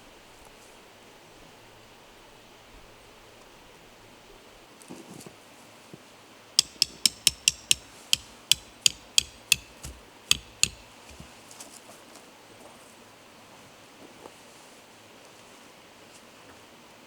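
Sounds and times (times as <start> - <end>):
hammer striking metal: 6.6 - 10.9.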